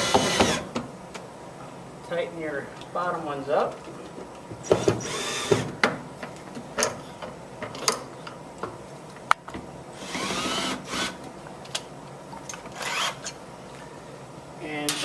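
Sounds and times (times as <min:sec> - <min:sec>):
power drill whining: 0:00.0 - 0:00.6, 0:04.7 - 0:05.6, 0:10.0 - 0:11.2, 0:12.8 - 0:13.3.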